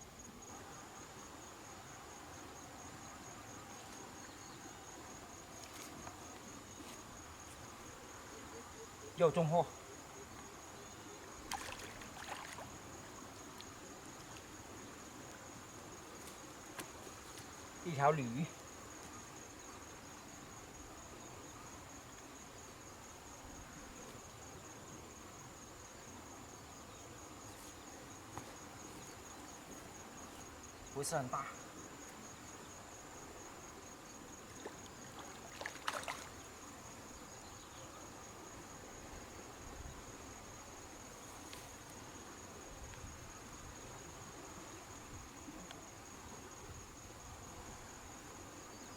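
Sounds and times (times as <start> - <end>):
river running: 0.0 - 48.7
crickets trilling: 0.0 - 48.9
high insect drone: 0.0 - 48.9
river flowing: 11.2 - 17.9, 33.2 - 37.3
clicks and splashing: 35.2 - 36.3.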